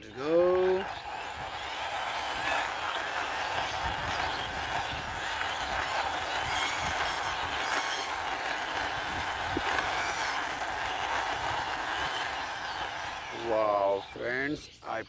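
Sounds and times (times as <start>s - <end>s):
toy car wheels rolling: 0.0s - 14.6s.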